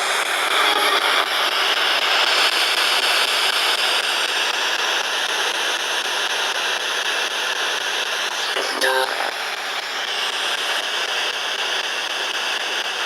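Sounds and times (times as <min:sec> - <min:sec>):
loud static hiss: 0:08.1 - 0:10.1.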